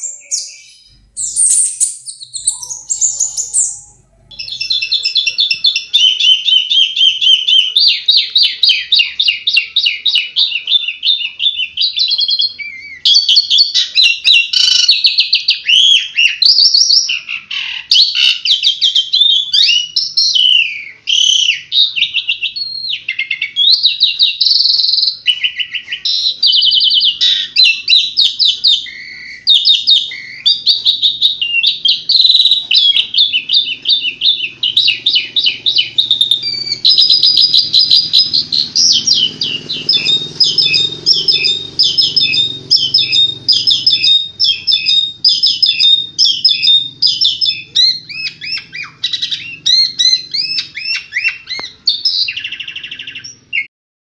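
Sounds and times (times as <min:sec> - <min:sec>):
songbird singing: 0:00.0 - 0:53.7.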